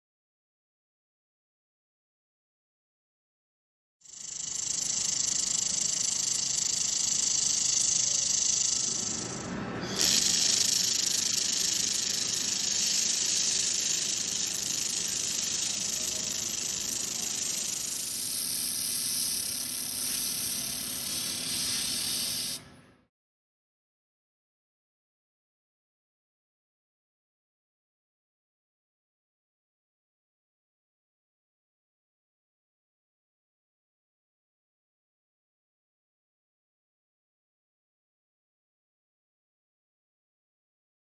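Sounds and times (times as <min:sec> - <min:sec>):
laser welder hissing: 0:04.3 - 0:22.7.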